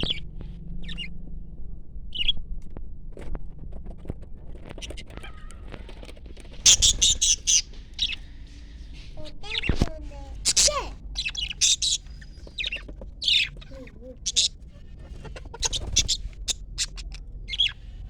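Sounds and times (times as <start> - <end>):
parrots chirping: 0.8 - 1.1, 4.8 - 18.0
parrots squawking harshly: 6.6 - 8.2, 9.5 - 17.9.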